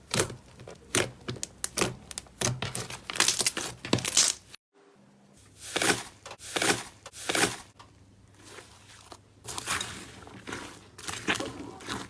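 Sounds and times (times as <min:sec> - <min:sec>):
slime squishing by hand: 0:05.6 - 0:12.0.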